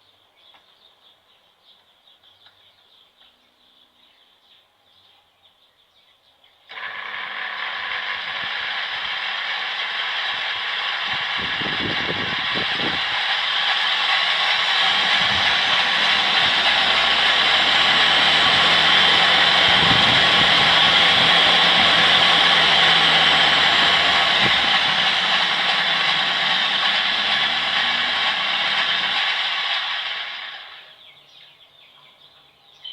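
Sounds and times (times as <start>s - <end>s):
machine tool motor whine: 6.7s - 30.9s
low hum: 11.8s - 30.8s.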